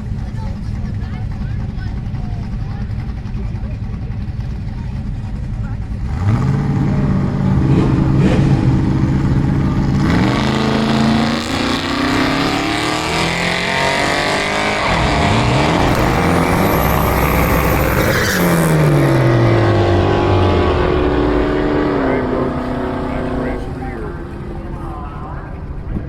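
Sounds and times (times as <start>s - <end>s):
car engines revving and accelerating: 0.0s - 26.0s
high rising whine: 6.4s - 25.8s.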